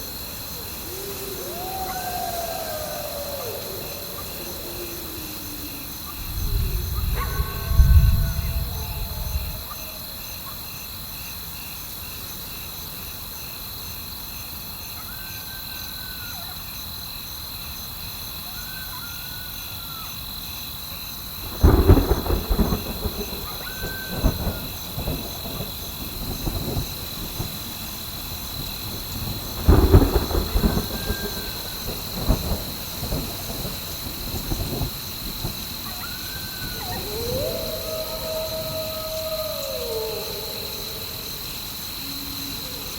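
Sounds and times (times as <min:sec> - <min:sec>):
thunder cracking and rumbling: 0:00.0 - 0:10.6, 0:21.3 - 0:42.9
insects chirring: 0:00.0 - 0:42.9.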